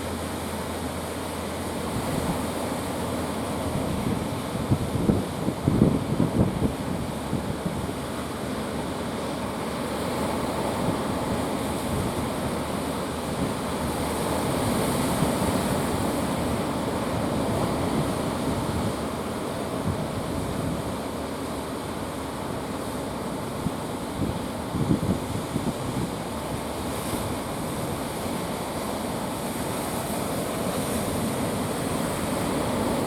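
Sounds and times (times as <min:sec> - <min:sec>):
sea surf: 0:00.0 - 0:33.0
wind buffeting microphone: 0:03.5 - 0:08.2, 0:10.4 - 0:21.2, 0:23.4 - 0:28.5.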